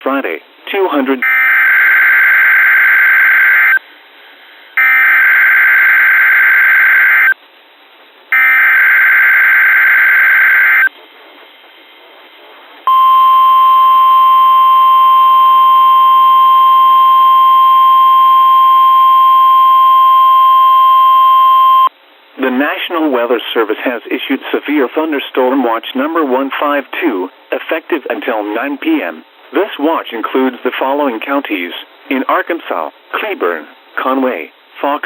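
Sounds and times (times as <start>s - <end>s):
steady warning alarm tone: 1.2s - 3.8s, 4.8s - 7.4s, 8.3s - 10.9s, 12.9s - 21.9s.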